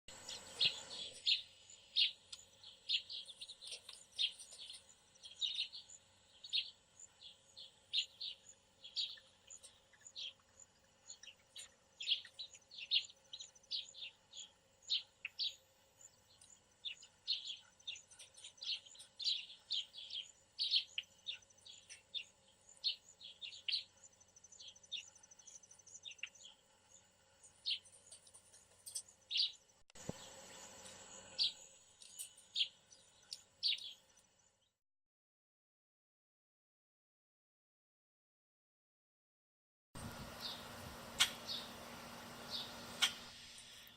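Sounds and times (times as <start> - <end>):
songbirds chirping: 0.1 - 34.8, 40.0 - 43.9.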